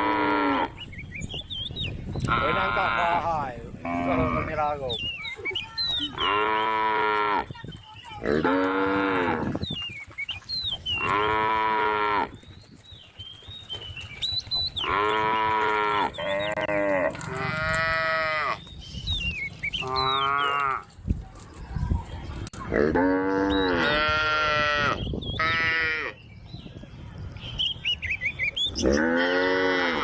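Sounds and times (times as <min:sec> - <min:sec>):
cattle mooing: 0:03.8 - 0:04.6, 0:11.0 - 0:12.3, 0:14.8 - 0:18.6, 0:19.8 - 0:20.8, 0:28.8 - 0:30.0.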